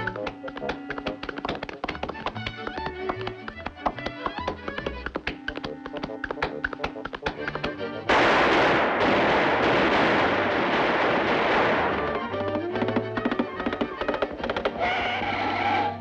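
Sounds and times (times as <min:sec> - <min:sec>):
sharp tapping clicks: 0:00.0 - 0:07.9, 0:12.4 - 0:14.8
cartoon music: 0:00.0 - 0:08.1
dense crackling noise effect: 0:06.2 - 0:12.4.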